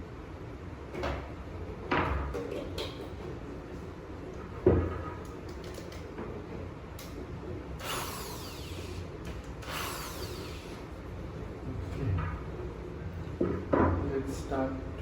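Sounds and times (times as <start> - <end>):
small electric drill whirring: 7.8 - 11.0.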